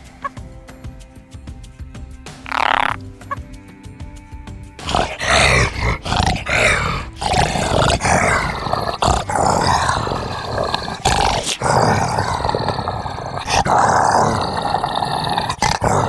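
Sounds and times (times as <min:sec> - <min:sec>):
animal calling loudly: 0:02.4 - 0:03.4, 0:04.8 - 0:16.0.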